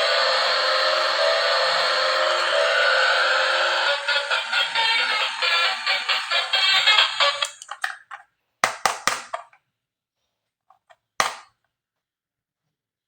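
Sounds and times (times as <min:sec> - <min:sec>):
synthesized electronic tune: 0:00.0 - 0:07.5
plastic toy clicks: 0:07.4 - 0:09.6.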